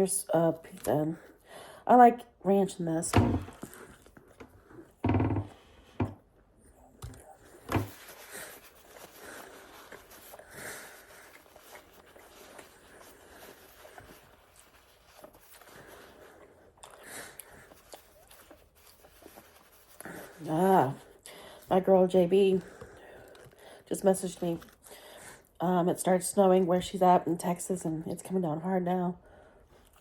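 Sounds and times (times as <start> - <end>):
person chewing food: 3.5 - 5.3, 6.6 - 20.3, 22.7 - 23.8, 29.7 - 30.0.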